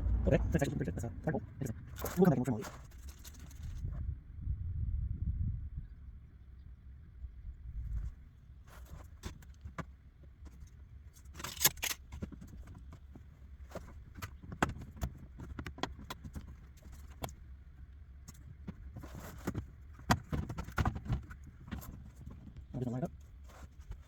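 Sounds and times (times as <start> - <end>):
rustling scrape: 1.6 - 4.0, 7.8 - 17.4, 18.2 - 24.0.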